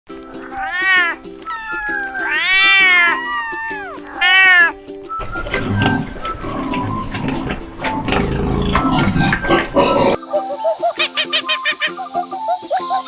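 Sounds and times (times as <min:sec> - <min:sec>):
background music: 0:00.1 - 0:13.0
cat meowing: 0:00.4 - 0:05.4.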